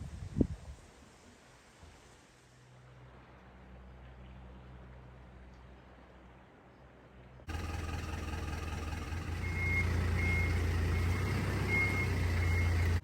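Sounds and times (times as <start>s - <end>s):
engine humming: 7.5s - 13.0s
reversing alarm beeping: 7.5s - 13.0s.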